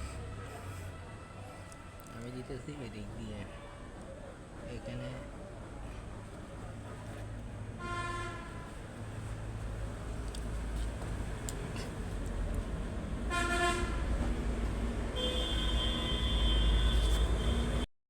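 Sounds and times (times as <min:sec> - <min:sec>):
crane engine rumble: 0:05.4 - 0:17.9.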